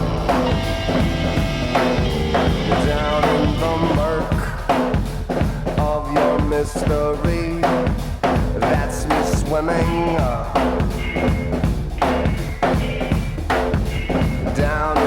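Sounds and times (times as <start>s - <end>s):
bass line: 0.0s - 15.0s
rock drum kit beat: 0.0s - 15.0s.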